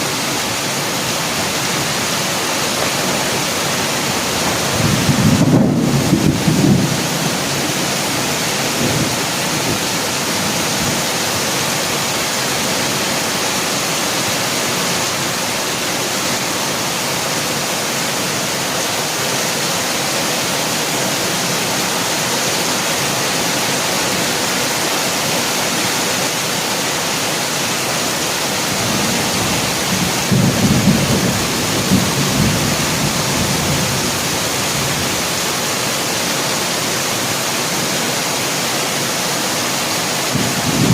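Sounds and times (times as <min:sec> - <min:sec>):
heavy rain: 0:00.0 - 0:40.9
thunder rumbling: 0:02.0 - 0:11.1, 0:28.8 - 0:35.2, 0:40.3 - 0:40.9.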